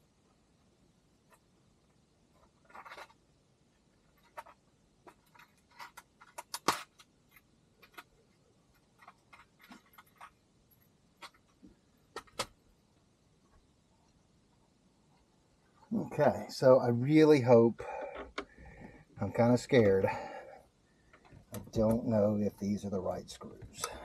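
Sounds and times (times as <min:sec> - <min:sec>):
metal parts clicking and clinking: 0:04.1 - 0:08.1, 0:08.7 - 0:11.6.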